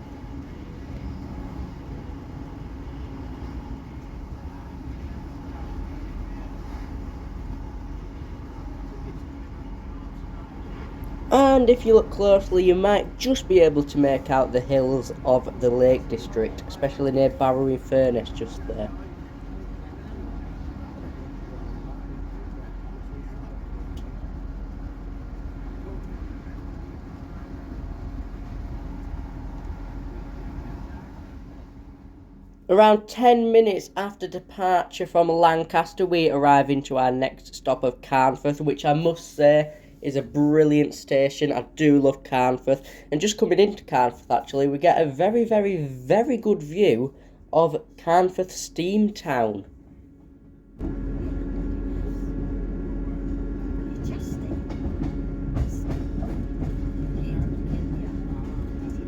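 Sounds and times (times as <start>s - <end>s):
diesel engine rumble: 0.0s - 32.6s
train wheels on rails: 49.8s - 59.0s.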